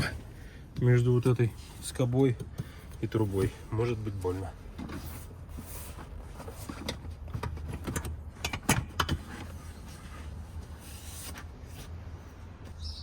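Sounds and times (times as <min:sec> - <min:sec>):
metal seat parts clicking and knocking: 0:06.5 - 0:09.6.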